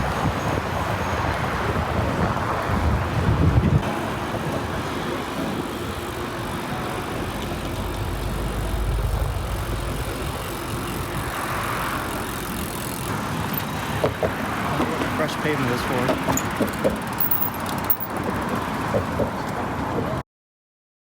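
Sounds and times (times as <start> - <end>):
street traffic: 0.0 - 20.2
low rumble: 7.4 - 11.9.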